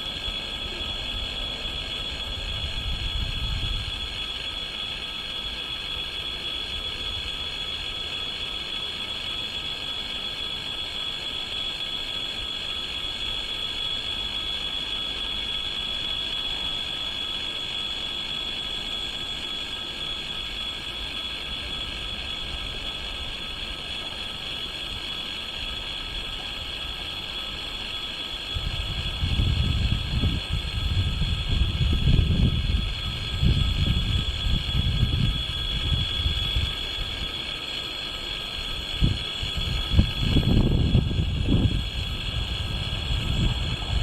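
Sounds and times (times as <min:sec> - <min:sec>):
continuous high whine: 0:00.0 - 0:44.0
train rumbling on rails: 0:39.0 - 0:44.0.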